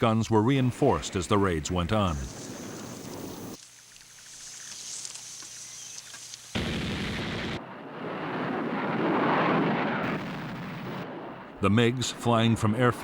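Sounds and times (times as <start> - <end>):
faint hiss: 2.1 - 6.6
anti-aircraft gunfire: 6.6 - 13.0
rumbling blast: 6.6 - 13.0.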